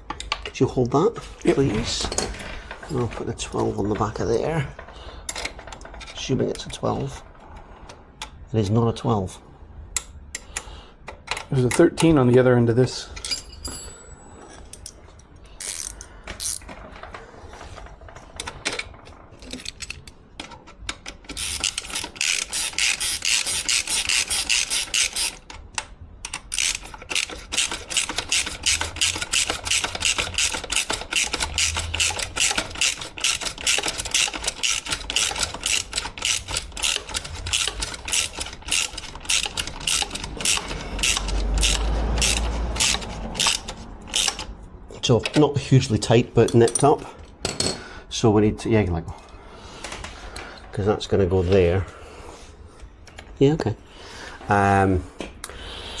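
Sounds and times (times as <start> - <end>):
ratchet wrench clicking: 15.6 - 16.7, 21.3 - 25.5, 26.2 - 44.6.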